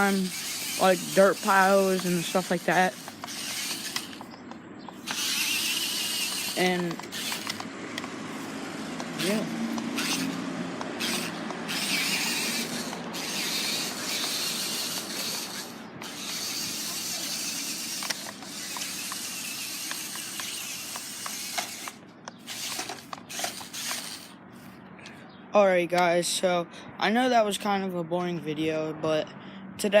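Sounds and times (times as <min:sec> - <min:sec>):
scattered clicks: 0:00.0 - 0:08.2, 0:09.0 - 0:24.2
rc car motor whirring: 0:00.0 - 0:24.4.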